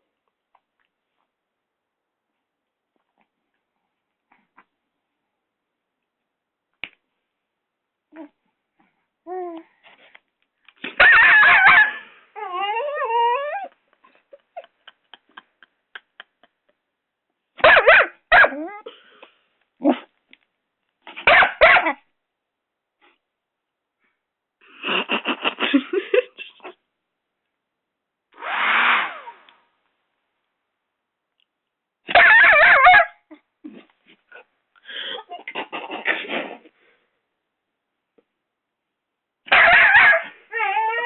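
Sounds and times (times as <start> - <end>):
puppy barking and yipping: 11.0 - 13.7, 17.6 - 18.8, 21.2 - 22.0, 32.1 - 33.2, 39.5 - 41.0
puppy whining: 11.0 - 14.9, 18.4 - 19.0, 39.5 - 41.0.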